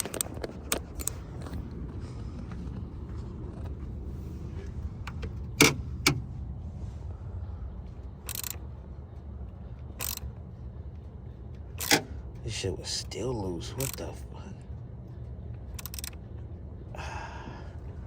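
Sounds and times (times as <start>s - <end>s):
steady low rumble: 0.0s - 18.0s
sharp metallic clicks: 8.2s - 8.8s, 9.7s - 10.6s, 11.6s - 12.3s, 13.6s - 14.3s, 15.5s - 16.5s.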